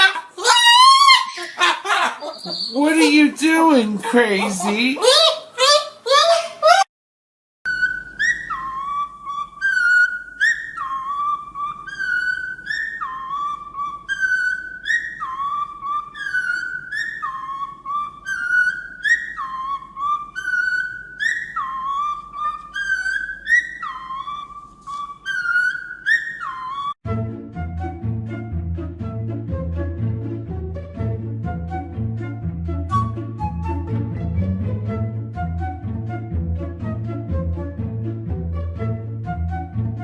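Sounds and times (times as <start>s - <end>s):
parrot whistling a phrase: 2.2s - 5.4s, 7.7s - 27.0s.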